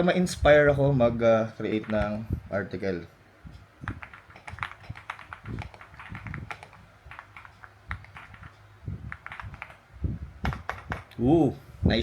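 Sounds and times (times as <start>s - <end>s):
mechanical keyboard typing: 1.6s - 2.2s, 3.8s - 9.8s, 10.4s - 11.2s.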